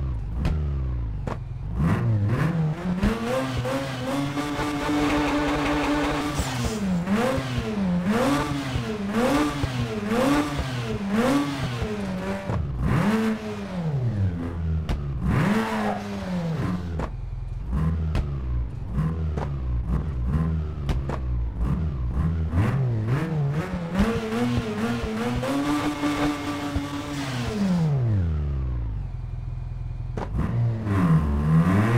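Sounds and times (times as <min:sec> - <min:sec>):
rotary engine revving: 0:01.8 - 0:14.6.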